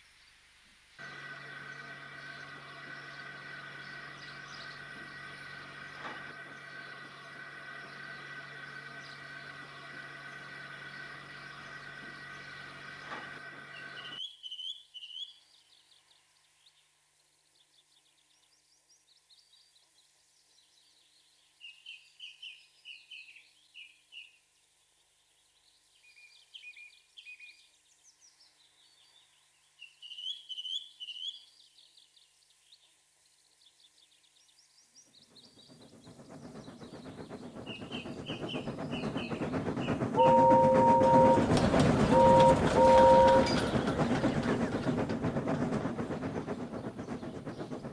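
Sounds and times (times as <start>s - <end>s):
birds chirping: 1.0s - 14.2s, 35.0s - 47.9s
steam train rumbling: 1.0s - 14.2s, 35.0s - 47.9s
steam train whistle: 40.2s - 44.7s.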